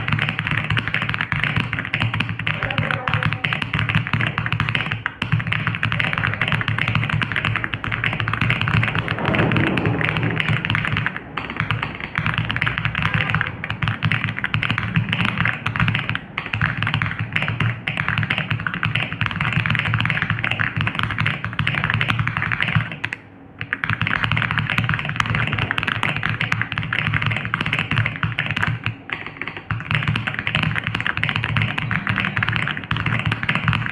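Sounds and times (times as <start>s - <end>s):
fast typing on mechanical keyboard: 0.0s - 33.9s.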